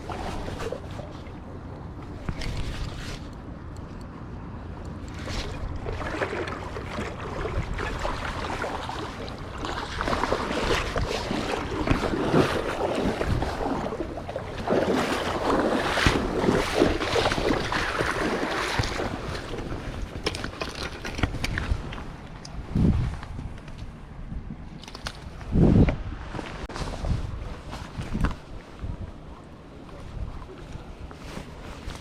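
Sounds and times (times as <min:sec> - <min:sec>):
wind buffeting microphone: 0:05.1 - 0:32.0
rushing water: 0:05.2 - 0:22.1.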